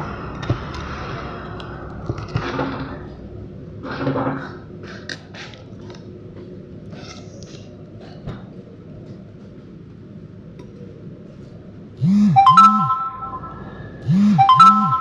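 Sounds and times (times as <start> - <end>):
electronic jingle: 12.1 - 15.0.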